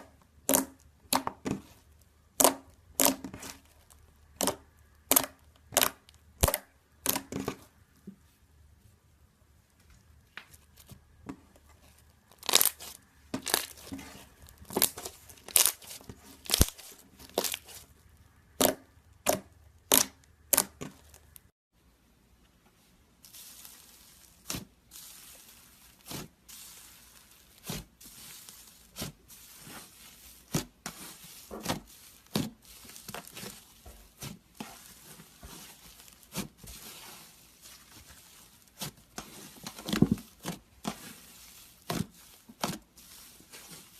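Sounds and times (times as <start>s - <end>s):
slime popping and crackling: 12.3s - 17.8s, 23.3s - 43.8s.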